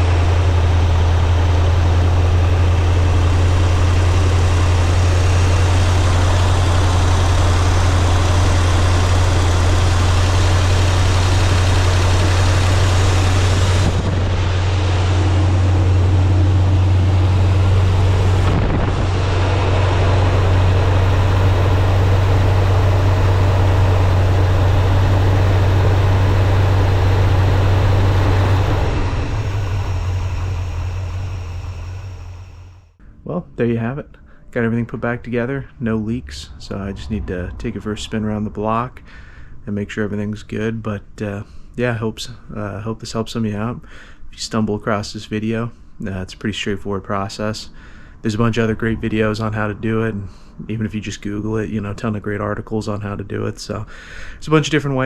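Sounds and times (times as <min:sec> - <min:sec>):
car engine idling: 0:00.0 - 0:33.0.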